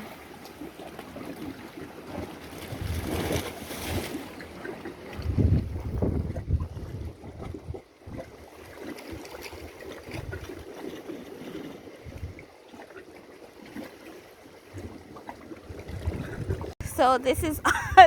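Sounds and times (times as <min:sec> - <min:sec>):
water lapping on rocks: 0:00.0 - 0:18.0
wind on microphone: 0:02.6 - 0:04.0, 0:05.0 - 0:08.5, 0:09.4 - 0:10.7, 0:12.0 - 0:12.5, 0:15.6 - 0:18.0.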